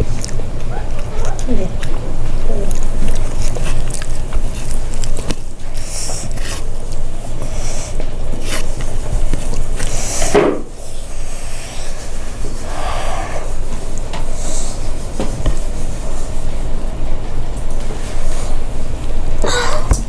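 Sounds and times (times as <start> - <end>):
person chewing food: 0.0 - 10.2
steady low hum: 0.0 - 20.0.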